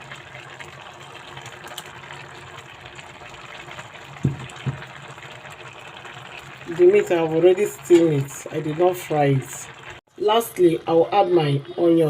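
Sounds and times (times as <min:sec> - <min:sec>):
pot cooking hiss: 0:00.0 - 0:12.0
low thumps: 0:04.2 - 0:04.9.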